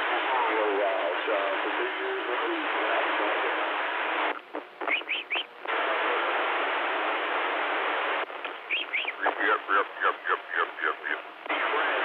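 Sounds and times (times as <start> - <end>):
radio receiver hiss: 0.0 - 12.0
short rising radio chirps: 4.8 - 5.5, 8.7 - 11.0.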